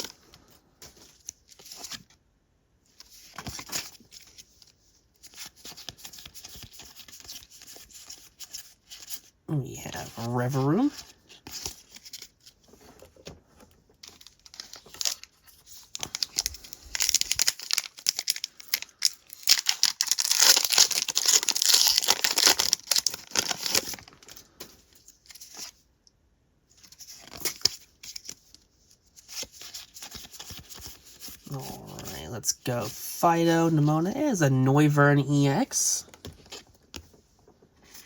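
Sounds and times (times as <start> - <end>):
cards rustling and clicking: 3.0 - 9.3, 10.9 - 25.8, 26.8 - 32.2
wrapper tearing and crinkling: 14.0 - 24.4.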